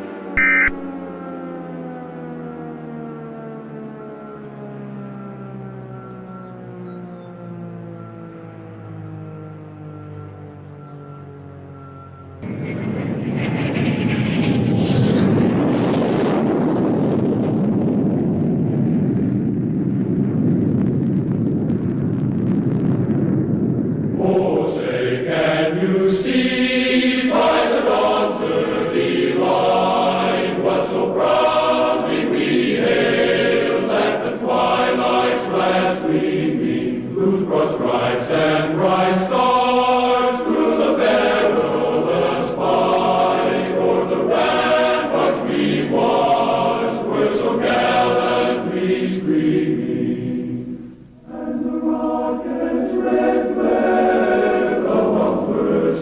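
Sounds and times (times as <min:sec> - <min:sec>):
choir singing: 0:24.2 - 0:56.0.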